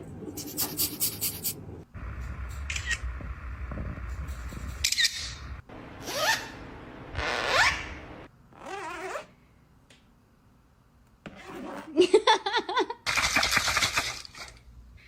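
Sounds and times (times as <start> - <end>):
low rumble: 1.9 - 6.0
parrot whistle-like calls: 6.0 - 6.6.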